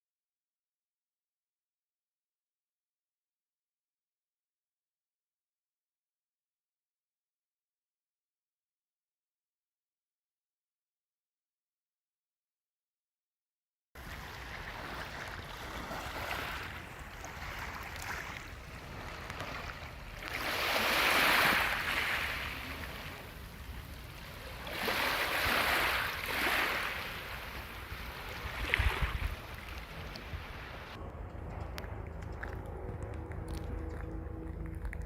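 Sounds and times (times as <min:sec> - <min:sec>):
sea waves washing in: 0:14.0 - 0:31.0
wind rumble on microphone: 0:14.0 - 0:35.0.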